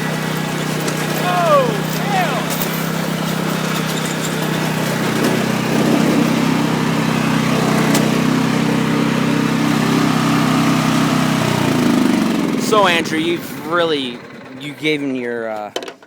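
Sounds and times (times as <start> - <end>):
lawn mower engine running: 0.0 - 15.4.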